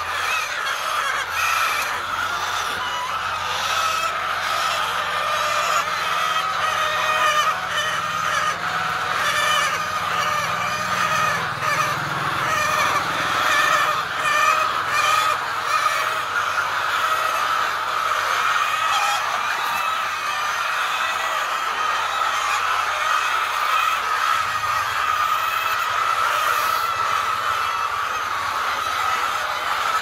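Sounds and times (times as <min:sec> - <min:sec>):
many birds chattering: 0:00.0 - 0:30.0.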